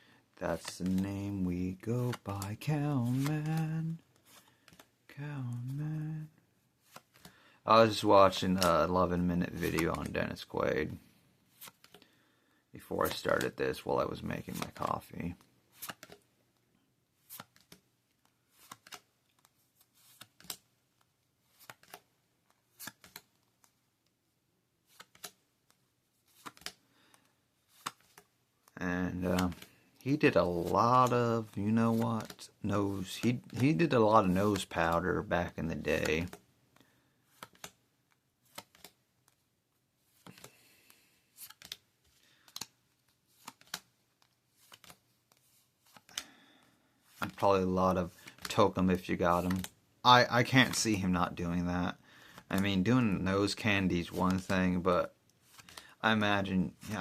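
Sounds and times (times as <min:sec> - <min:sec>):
cards snapping: 0:00.6 - 0:04.9, 0:06.8 - 0:10.2, 0:15.7 - 0:16.2, 0:17.2 - 0:20.7, 0:21.5 - 0:23.8, 0:24.8 - 0:28.3, 0:29.0 - 0:35.0, 0:35.9 - 0:39.4, 0:40.1 - 0:46.4, 0:47.1 - 0:49.8, 0:55.4 - 0:56.0
trading cards snapping and flicking: 0:02.0 - 0:04.9, 0:15.8 - 0:16.2, 0:17.3 - 0:17.8, 0:18.5 - 0:20.6, 0:21.5 - 0:22.1, 0:22.7 - 0:23.7, 0:24.9 - 0:25.4, 0:26.3 - 0:26.8, 0:37.3 - 0:37.8, 0:38.5 - 0:39.0, 0:41.4 - 0:41.8, 0:42.4 - 0:46.3.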